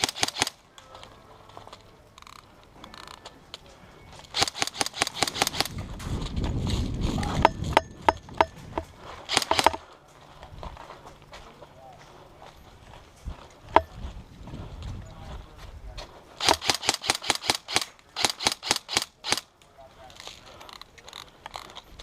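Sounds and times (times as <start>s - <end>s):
airsoft gun firing bursts: 0.0s - 0.6s, 4.3s - 5.8s, 9.3s - 9.8s, 16.4s - 19.4s.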